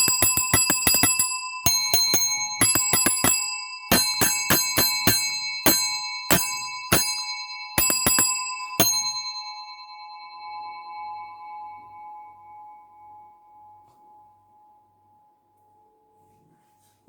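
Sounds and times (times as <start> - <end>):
small metal bell struck: 0.0 - 12.4.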